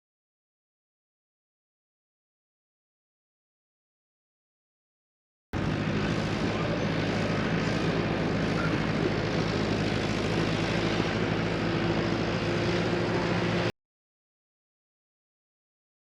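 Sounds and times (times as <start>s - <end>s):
earth-moving equipment engine running: 5.6s - 13.7s.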